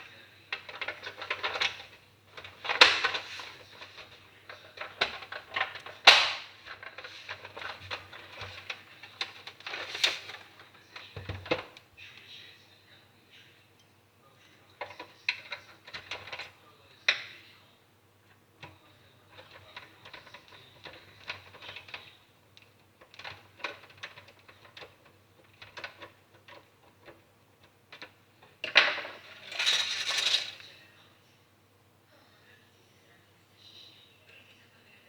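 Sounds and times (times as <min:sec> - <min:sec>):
parts clattering: 0:00.0 - 0:11.8, 0:18.6 - 0:30.8
small parts clicking and rattling: 0:19.3 - 0:30.6.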